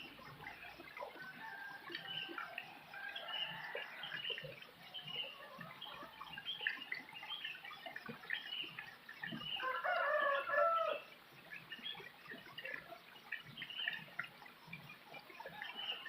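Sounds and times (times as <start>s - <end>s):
chickens clucking: 0.0s - 7.0s
small birds chirping: 2.0s - 9.8s
drawn-out fowl call: 9.6s - 11.0s.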